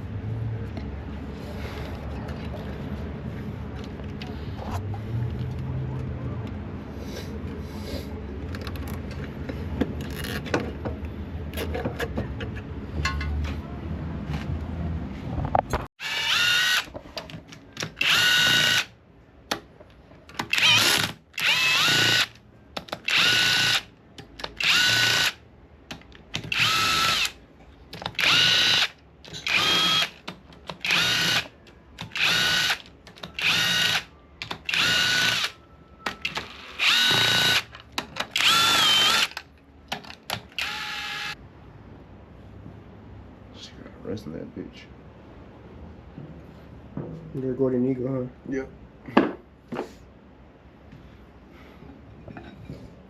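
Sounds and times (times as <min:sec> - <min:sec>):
power drill whining: 0:16.0 - 0:16.9, 0:18.0 - 0:18.9, 0:20.5 - 0:22.4, 0:23.1 - 0:23.8, 0:24.6 - 0:25.4, 0:26.5 - 0:27.4, 0:28.2 - 0:30.2, 0:30.8 - 0:31.5, 0:32.1 - 0:37.7, 0:38.4 - 0:39.4, 0:40.6 - 0:41.4.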